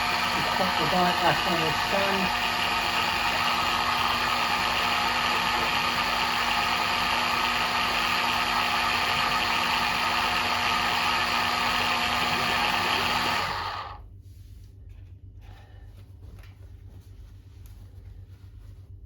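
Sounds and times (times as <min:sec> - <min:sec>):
electric motor humming: 0:00.0 - 0:14.0.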